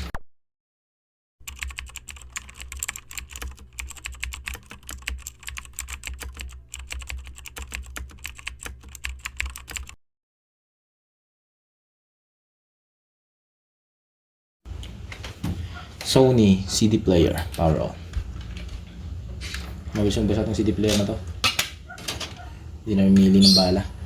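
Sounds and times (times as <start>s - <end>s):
low steady hum: 14.7s - 24.0s
cd player mechanism clicking: 19.5s - 22.5s.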